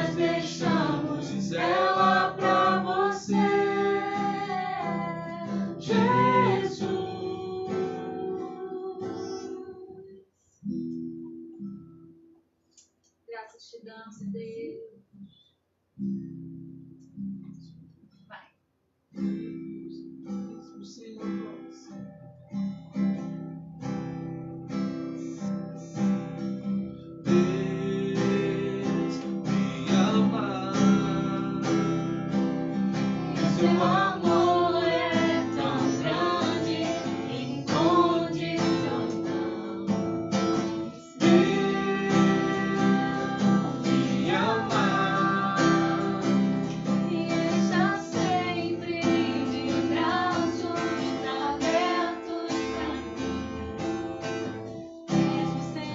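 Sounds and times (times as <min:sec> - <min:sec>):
voices singing a worship song: 0:00.0 - 0:10.1, 0:27.2 - 0:55.9
acoustic guitar strumming: 0:00.0 - 0:12.4, 0:16.0 - 0:18.4, 0:19.2 - 0:55.9.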